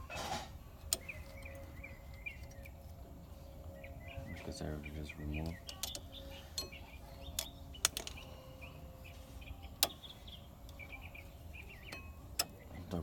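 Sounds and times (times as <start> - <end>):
birds chirping: 0.0 - 13.0
sharp metallic clicks: 11.8 - 13.0.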